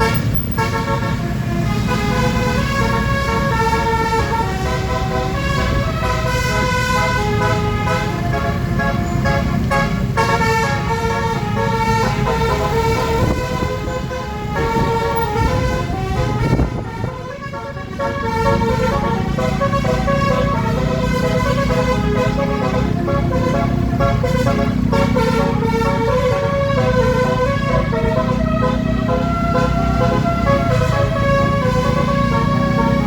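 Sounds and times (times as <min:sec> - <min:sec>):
multi-tone bus horn tune: 0:00.0 - 0:33.0
vehicle engine rumble: 0:00.0 - 0:33.0.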